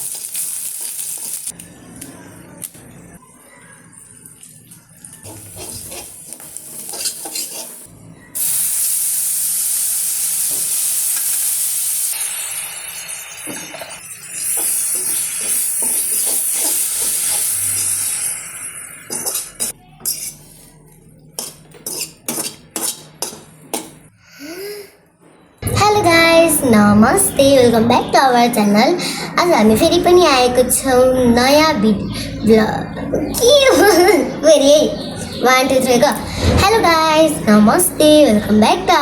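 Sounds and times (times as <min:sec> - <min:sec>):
food sizzling in frying pan: 0:00.0 - 0:01.6, 0:05.3 - 0:19.7
utensil stirring and scraping: 0:04.3 - 0:07.9, 0:14.4 - 0:18.2, 0:19.0 - 0:24.0.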